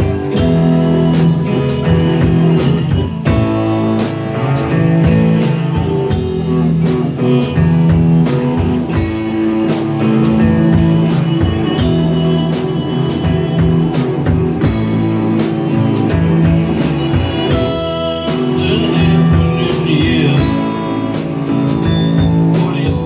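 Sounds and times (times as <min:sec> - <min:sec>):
instrumental rock band: 0:00.0 - 0:23.0.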